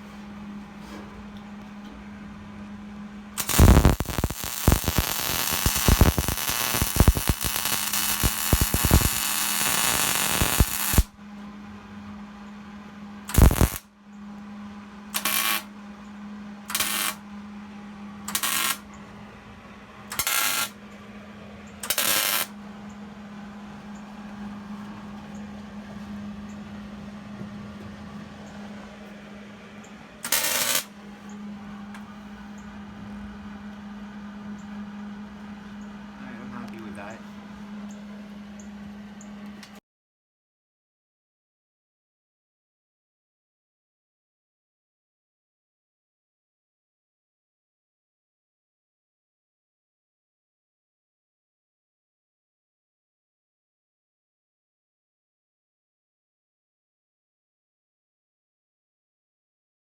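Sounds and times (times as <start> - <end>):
steady low hum: 0.0 - 39.8
short welding bursts: 3.4 - 11.1, 13.3 - 13.8, 15.2 - 15.7, 16.7 - 17.2, 18.3 - 18.8, 20.1 - 20.8, 21.8 - 22.5, 30.2 - 30.9
welding arc crackling: 3.4 - 11.1, 13.3 - 13.8, 15.2 - 15.7, 16.7 - 17.2, 18.3 - 18.9, 20.1 - 20.8, 21.8 - 22.5, 30.2 - 30.9.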